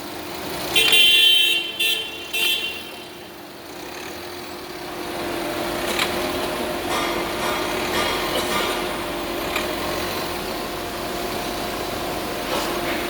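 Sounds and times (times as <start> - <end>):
engine and road noise: 0.0 - 13.0
car horn honks: 0.7 - 3.4.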